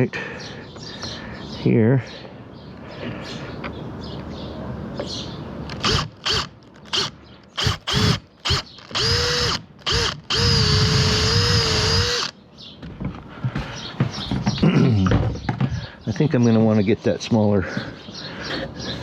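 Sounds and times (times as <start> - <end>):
electric drill boring: 5.7 - 12.3.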